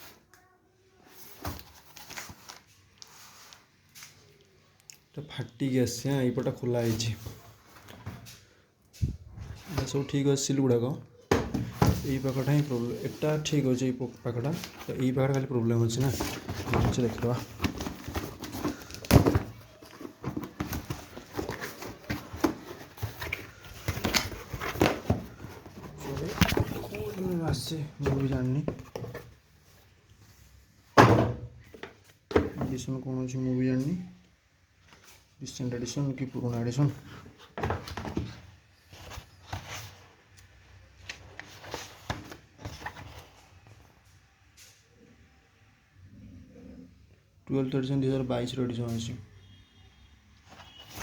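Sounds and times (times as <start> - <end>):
book pages rustling and turning: 1.0 - 4.7, 11.7 - 30.2, 36.2 - 44.0, 50.5 - 51.0
paper rustling: 14.2 - 27.4, 50.5 - 51.0.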